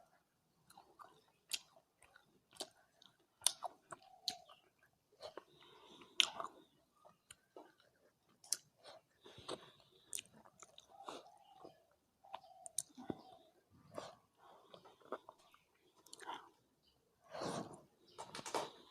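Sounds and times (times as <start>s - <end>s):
wet chewing: 0.6s - 16.6s
small mouth clicks: 9.4s - 13.3s.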